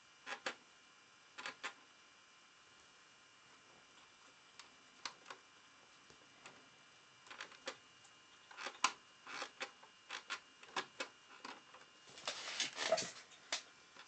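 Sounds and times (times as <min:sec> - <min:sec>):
tools scraping: 0:12.1 - 0:13.4.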